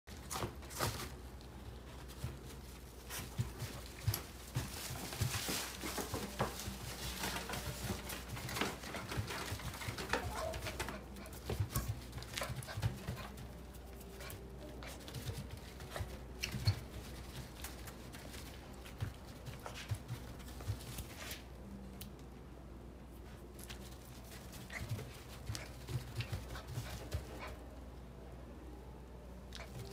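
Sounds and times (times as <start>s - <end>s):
puppy claws clicking on floor: 2.0s - 21.4s.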